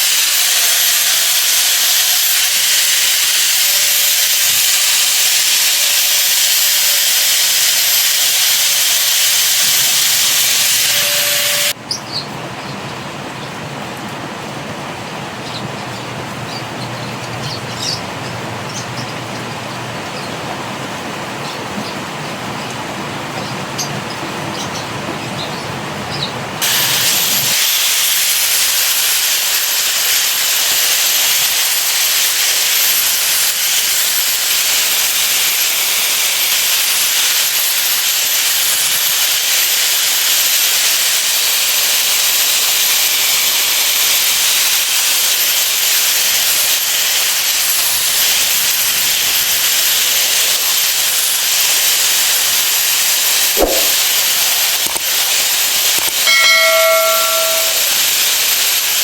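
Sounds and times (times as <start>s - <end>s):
high wavering whine: 0.0s - 11.8s, 26.6s - 59.0s
loud steady hiss: 0.0s - 11.8s, 26.6s - 59.0s.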